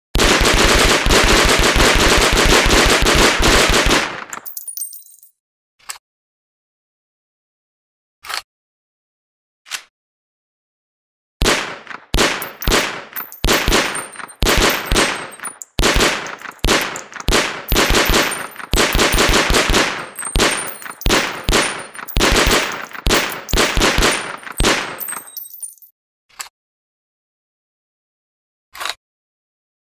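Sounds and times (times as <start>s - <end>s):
submachine gun automatic bursts: 0.2s - 4.3s, 11.4s - 25.3s.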